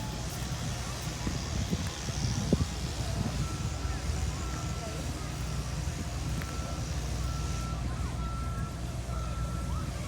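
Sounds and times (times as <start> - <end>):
reversing alarm beeping: 6.5 - 9.9.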